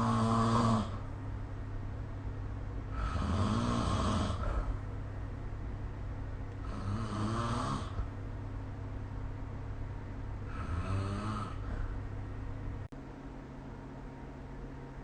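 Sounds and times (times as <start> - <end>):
person snoring: 0.0 - 1.1, 2.9 - 4.8, 6.6 - 8.1, 10.5 - 12.0
steady low hum: 0.0 - 15.0.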